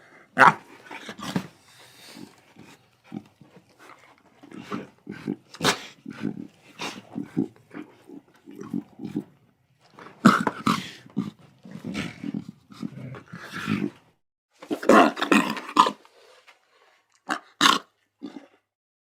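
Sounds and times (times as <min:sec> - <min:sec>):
lion cubs growling: 0:00.9 - 0:09.4, 0:10.1 - 0:14.0.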